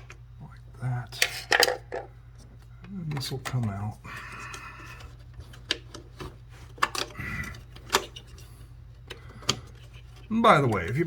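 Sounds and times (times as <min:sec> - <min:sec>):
low steady hum: 0:00.0 - 0:11.0
plastic parts clicking and knocking: 0:01.2 - 0:02.1, 0:04.4 - 0:08.4.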